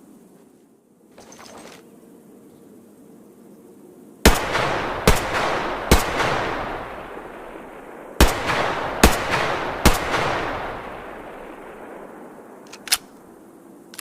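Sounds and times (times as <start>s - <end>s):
gunshots with echo: 4.3s - 12.2s.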